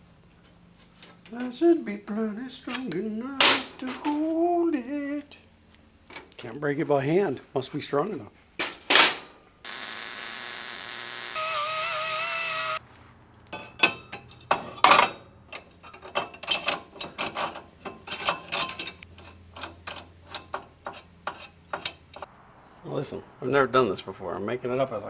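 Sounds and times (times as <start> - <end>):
loud steady hissing: 9.7 - 12.8.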